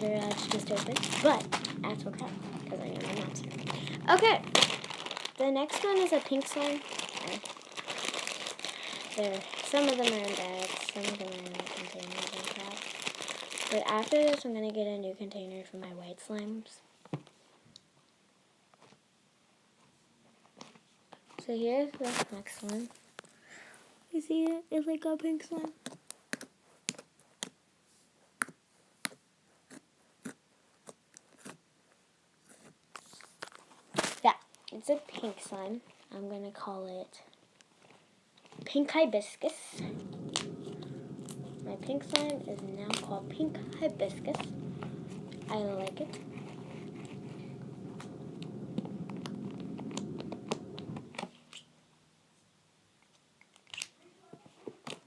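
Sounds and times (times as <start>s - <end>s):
slime squelching: 0.0s - 14.5s, 39.7s - 51.6s.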